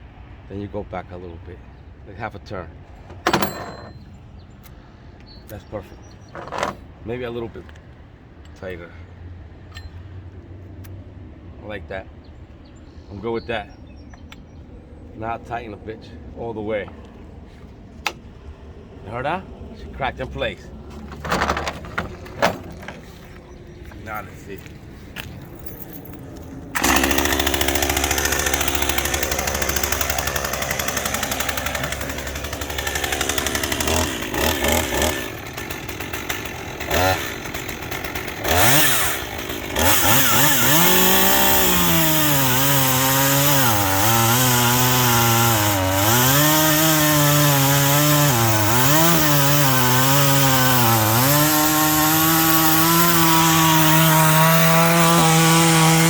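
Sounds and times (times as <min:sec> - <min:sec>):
chainsaw engine starting and revving: 0:20.9 - 0:23.4, 0:26.8 - 0:56.0.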